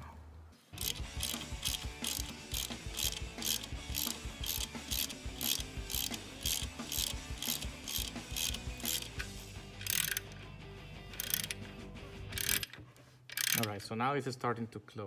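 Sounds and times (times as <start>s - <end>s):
ratchet wrench clicking: 0.8s - 10.4s, 11.1s - 11.7s, 12.3s - 13.8s.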